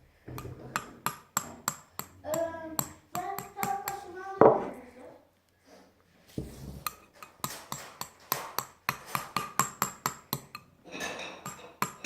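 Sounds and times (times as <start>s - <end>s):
spoon clinking in a bowl: 6.9s - 12.0s.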